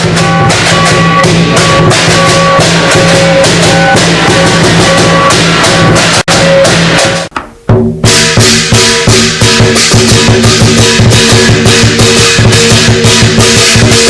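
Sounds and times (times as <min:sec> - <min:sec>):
loud drum-heavy music: 0:00.0 - 0:14.0.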